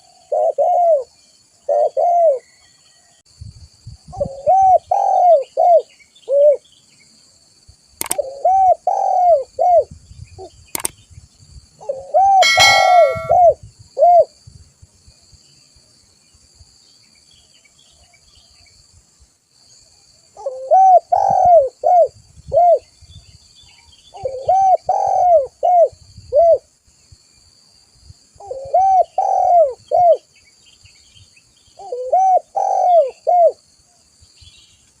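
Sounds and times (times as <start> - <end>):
dove cooing: 0.0 - 1.1, 1.7 - 2.5, 4.2 - 6.6, 8.2 - 9.9, 20.4 - 22.8, 24.2 - 26.6, 28.4 - 30.2, 31.8 - 33.6
sharp clicks: 8.0 - 8.2, 10.8 - 11.0.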